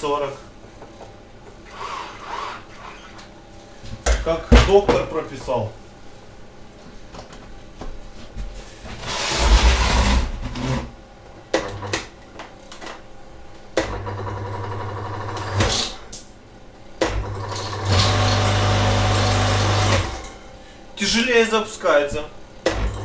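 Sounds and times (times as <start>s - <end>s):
electric motor humming: 17.2s - 20.3s.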